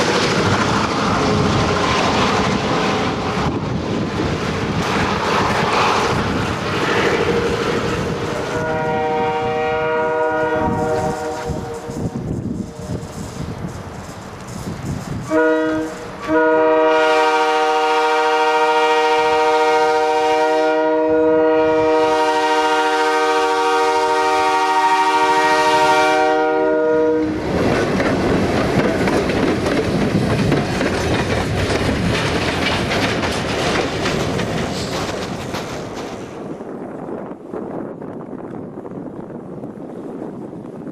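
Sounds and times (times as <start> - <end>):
passing train rumble: 0.0 - 40.9
locomotive air horn blasts: 8.5 - 13.0, 15.3 - 27.4.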